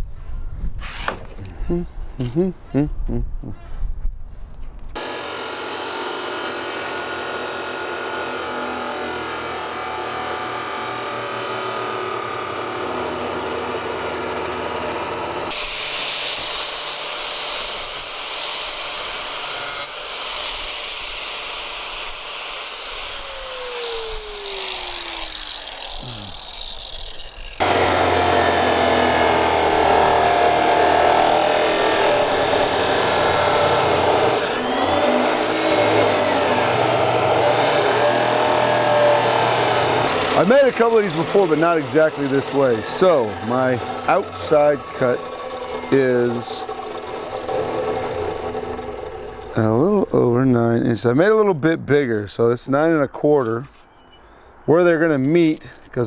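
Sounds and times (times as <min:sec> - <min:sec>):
chop saw cutting steel: 0:00.8 - 0:01.4, 0:05.0 - 0:50.3
motor winding down: 0:05.0 - 0:15.9, 0:22.5 - 0:50.2.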